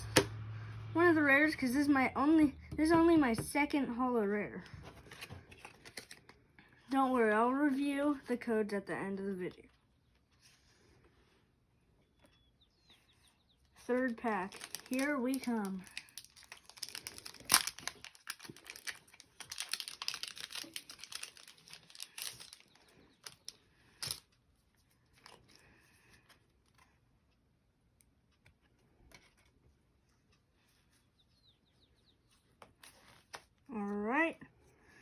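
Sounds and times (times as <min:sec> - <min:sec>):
cards being handled: 0:04.6 - 0:06.4, 0:14.0 - 0:24.2
foil wrapper crinkling and tearing: 0:14.0 - 0:24.3.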